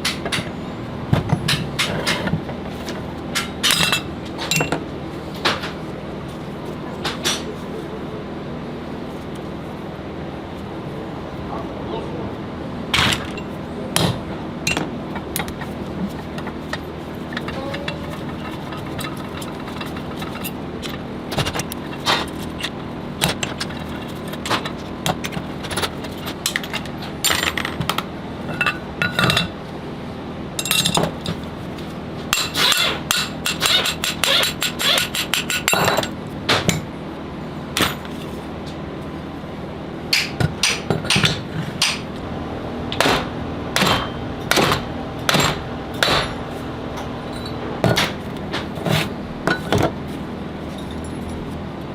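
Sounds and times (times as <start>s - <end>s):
tools tapping on metal: 14.7s - 15.7s, 32.4s - 36.9s.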